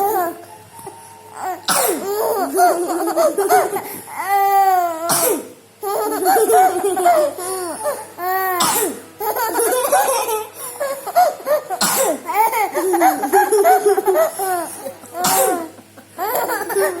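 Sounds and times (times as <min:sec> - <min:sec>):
child coughing: 0:01.6 - 0:04.3, 0:04.9 - 0:17.0
young child laughing: 0:02.0 - 0:04.3, 0:05.8 - 0:08.3, 0:09.2 - 0:17.0.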